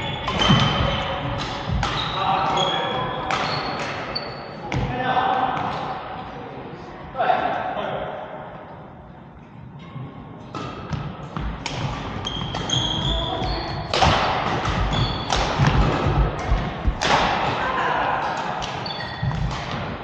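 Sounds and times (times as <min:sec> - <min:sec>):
shoe squeaks on court: 0:00.0 - 0:04.6, 0:12.2 - 0:14.0, 0:14.9 - 0:15.4, 0:18.8 - 0:19.5
racket hitting shuttlecock: 0:00.2 - 0:02.2, 0:03.2 - 0:04.1, 0:10.5 - 0:20.0.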